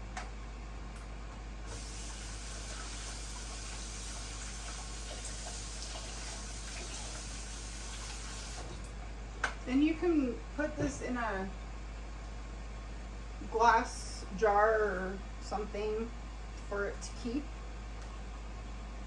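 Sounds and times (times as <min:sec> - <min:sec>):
kitchen tap running: 0:01.7 - 0:08.9.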